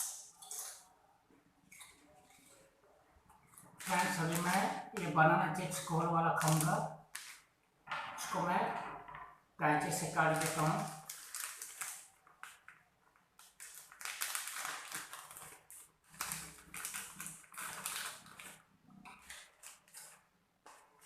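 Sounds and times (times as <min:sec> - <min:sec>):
plastic packet crinkling: 0:03.4 - 0:07.5, 0:10.0 - 0:21.0
scissors cutting plastic packet: 0:03.5 - 0:07.5, 0:10.0 - 0:21.0.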